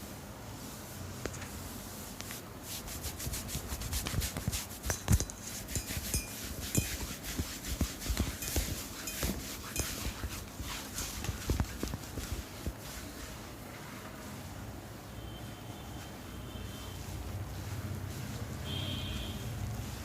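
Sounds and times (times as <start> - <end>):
hands rubbing oiled skin: 1.6 - 14.0.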